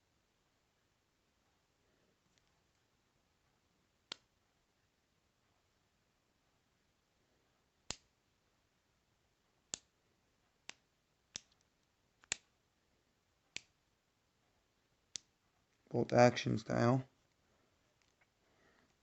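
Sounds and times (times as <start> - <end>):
pen clicking: 10.6 - 12.5.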